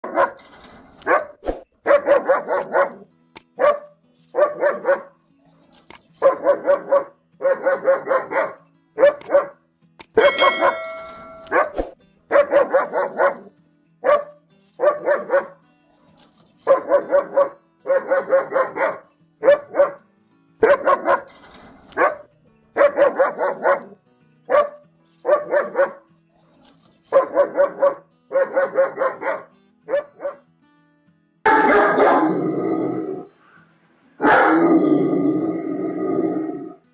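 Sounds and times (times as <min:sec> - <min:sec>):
dog barking aggressively: 0:00.0 - 0:00.4, 0:01.0 - 0:03.0, 0:03.6 - 0:05.1, 0:06.2 - 0:09.6, 0:10.2 - 0:15.6, 0:16.7 - 0:20.0, 0:20.6 - 0:21.3, 0:21.9 - 0:26.0, 0:27.1 - 0:30.4, 0:31.5 - 0:32.7, 0:34.2 - 0:34.9.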